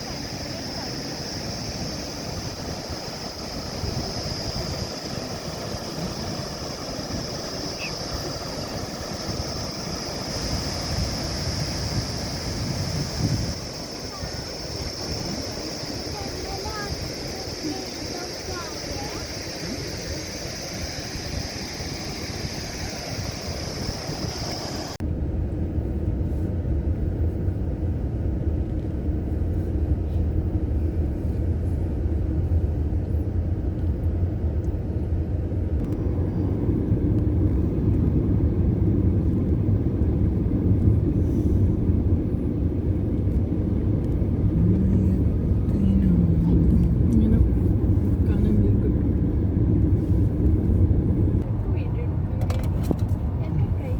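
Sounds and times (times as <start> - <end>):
high-pitched hiss: 0.0 - 25.0
car driving with low rumble: 0.0 - 53.9
outdoor noise: 0.0 - 53.9.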